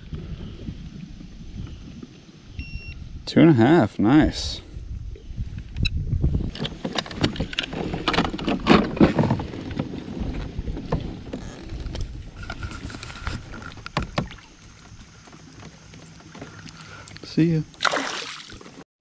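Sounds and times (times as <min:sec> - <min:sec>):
wind rumble on microphone: 0:00.0 - 0:15.2
knocks and rattles on kayak: 0:06.2 - 0:17.8.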